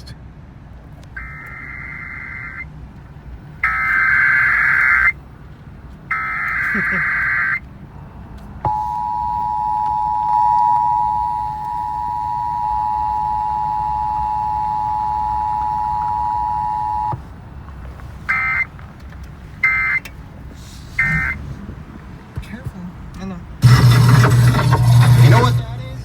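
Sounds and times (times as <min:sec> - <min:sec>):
buzzy data bursts: 0:01.2 - 0:02.6, 0:03.6 - 0:05.2, 0:06.1 - 0:07.6, 0:08.7 - 0:17.2, 0:23.6 - 0:26.0
two-tone attention signal: 0:01.2 - 0:02.6, 0:03.6 - 0:05.1, 0:06.1 - 0:07.6, 0:08.7 - 0:17.2, 0:18.3 - 0:18.6, 0:19.6 - 0:20.0, 0:21.0 - 0:21.4, 0:23.6 - 0:26.0.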